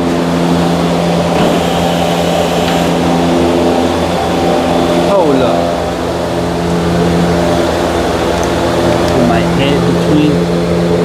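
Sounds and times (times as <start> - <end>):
motor humming: 0.4 - 7.4.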